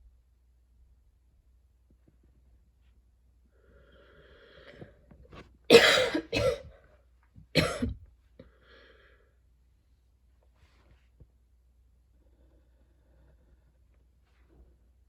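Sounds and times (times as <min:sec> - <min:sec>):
faint breathing: 0:03.4 - 0:05.2, 0:08.4 - 0:09.5, 0:12.1 - 0:14.8
woman coughing: 0:05.7 - 0:06.7, 0:07.6 - 0:08.0.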